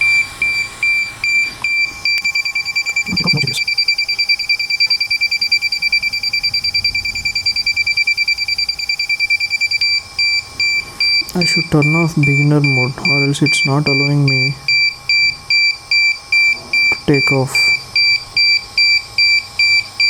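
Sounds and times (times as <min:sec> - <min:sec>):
high electronic warning beeps: 0:00.0 - 0:20.0.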